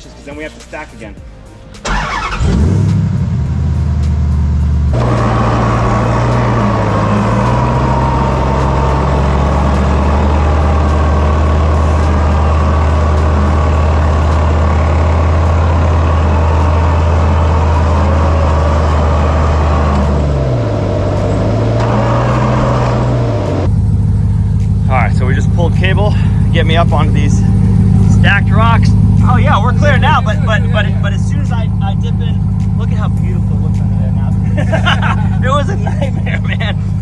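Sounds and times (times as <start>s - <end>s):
truck engine running: 1.8s - 37.0s.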